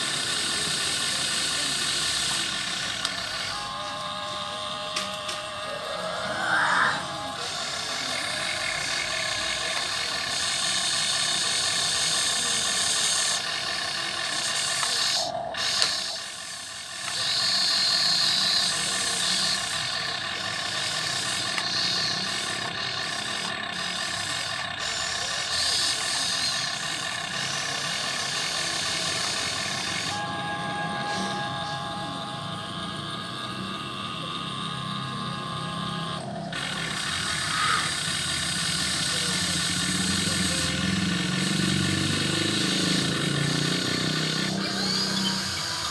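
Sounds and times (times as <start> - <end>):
small electric motors whirring: 0.0 - 45.9.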